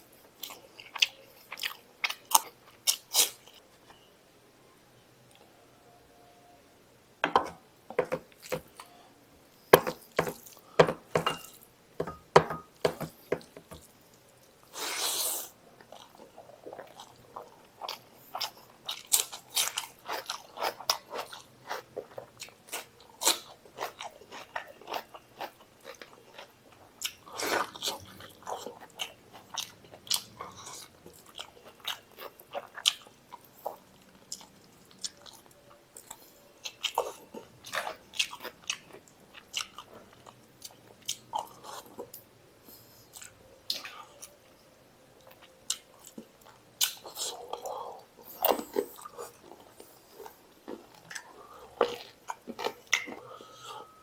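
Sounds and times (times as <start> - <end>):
close-up chewing with mouth smacks: 15.8 - 42.3, 43.1 - 44.5, 45.2 - 53.8.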